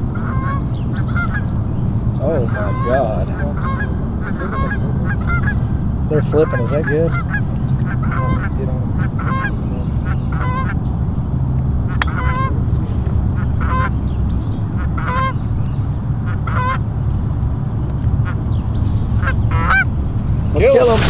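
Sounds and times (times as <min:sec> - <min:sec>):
goose honking: 0:00.0 - 0:10.8, 0:11.9 - 0:14.1, 0:14.7 - 0:15.5, 0:16.2 - 0:16.9, 0:19.2 - 0:19.9
low rumble: 0:00.0 - 0:15.8, 0:18.2 - 0:21.0.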